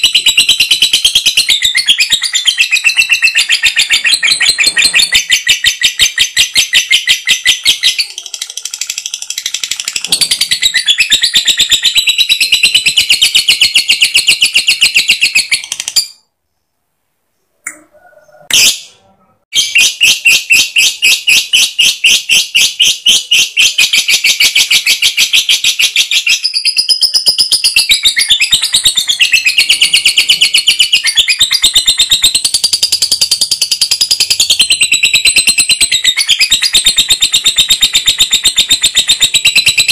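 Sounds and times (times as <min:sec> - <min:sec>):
bird chattering trill: 0:00.0 - 0:16.2, 0:19.6 - 0:39.9.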